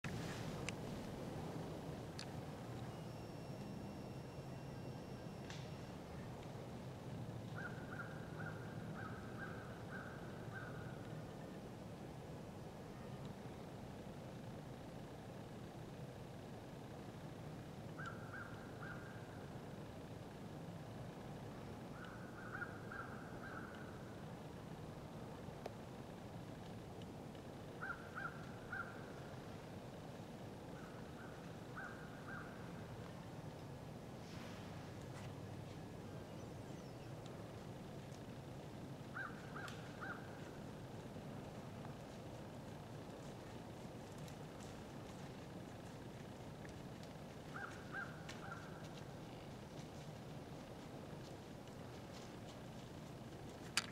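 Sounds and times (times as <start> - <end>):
low steady hum: 0.0 - 53.9
distant bird calling: 7.5 - 11.6, 17.9 - 19.5, 21.9 - 24.1, 27.7 - 29.4, 30.7 - 32.9, 35.8 - 37.4, 39.1 - 40.6, 47.5 - 48.9.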